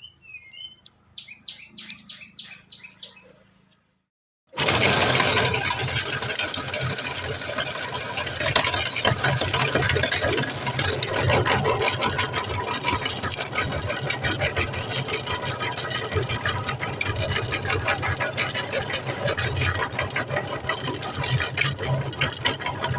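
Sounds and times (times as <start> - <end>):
electric meat grinder running: 4.5 - 22.9.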